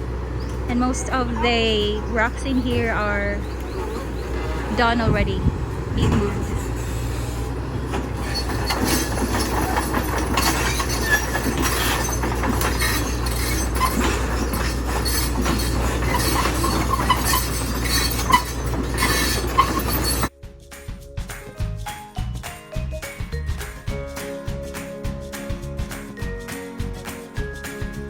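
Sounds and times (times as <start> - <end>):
diesel engine droning: 0.0 - 20.4
rocks clanking and scraping: 0.4 - 20.3.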